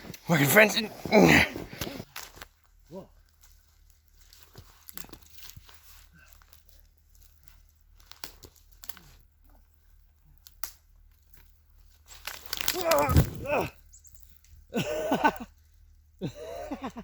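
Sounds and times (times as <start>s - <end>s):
footsteps crunching through snow: 12.1s - 13.6s.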